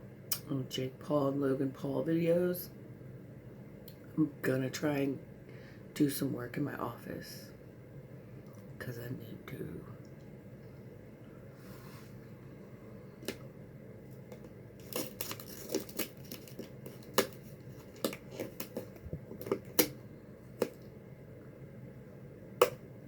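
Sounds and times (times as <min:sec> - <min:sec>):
plastic packaging crinkling: 0:14.1 - 0:20.0.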